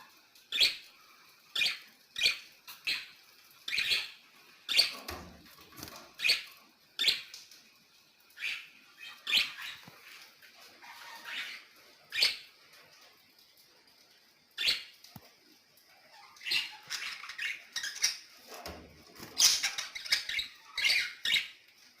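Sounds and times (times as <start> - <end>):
pet birds chattering: 0.4 - 7.4, 8.2 - 12.6, 14.6 - 15.1, 15.9 - 18.5, 19.1 - 21.7.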